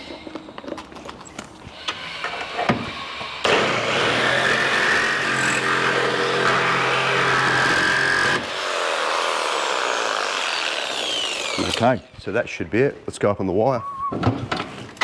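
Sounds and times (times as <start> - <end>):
power saw cutting metal: 1.8 - 12.1.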